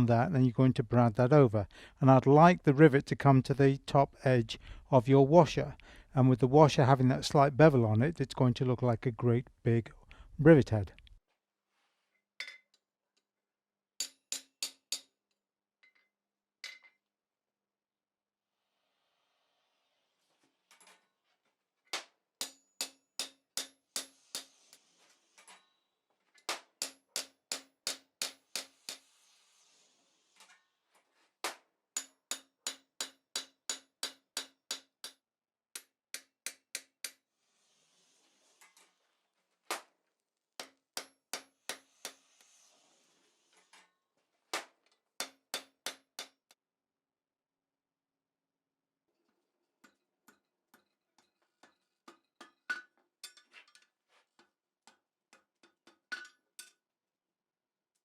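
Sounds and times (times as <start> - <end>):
hammer peening a rivet: 21.9 - 25.0, 26.5 - 29.2, 31.4 - 35.2, 35.8 - 37.2, 40.6 - 42.6, 44.5 - 46.4.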